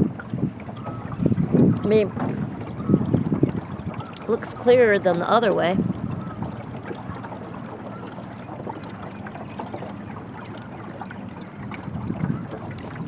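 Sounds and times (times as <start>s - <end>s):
wind noise: 0.0s - 7.2s, 11.6s - 13.0s
water wash: 0.0s - 13.0s.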